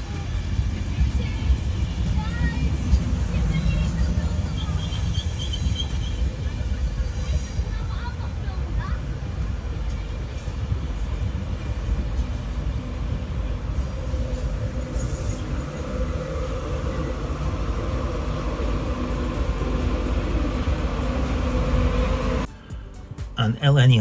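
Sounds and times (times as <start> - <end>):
train rumbling on track: 0.0 - 24.0.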